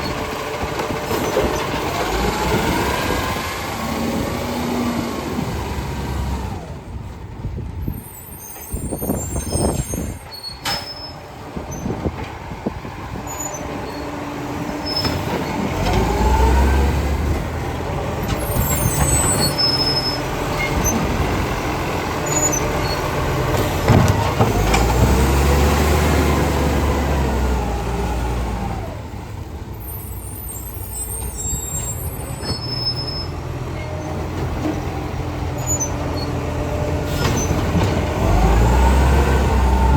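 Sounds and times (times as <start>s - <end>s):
truck diesel engine revving: 0.0s - 6.9s, 13.7s - 29.5s, 33.0s - 39.9s
air brakes hissing: 37.1s - 37.6s.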